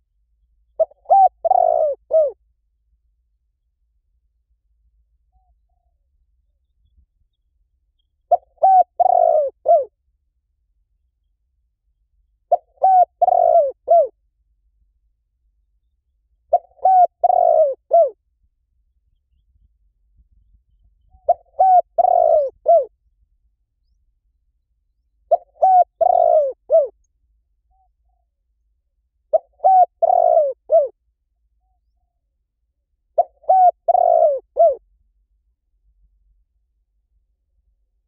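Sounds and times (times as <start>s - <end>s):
dove cooing: 0.8s - 2.4s, 8.3s - 9.9s, 12.5s - 14.2s, 16.5s - 18.2s, 21.2s - 22.9s, 25.3s - 27.0s, 29.3s - 31.0s, 33.2s - 34.8s.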